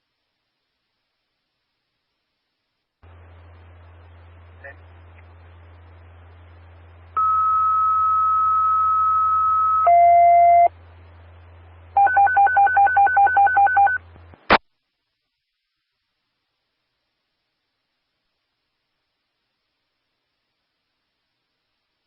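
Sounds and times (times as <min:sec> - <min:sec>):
radio channel hum: 0:03.0 - 0:14.7
radio alert tones: 0:07.2 - 0:10.7.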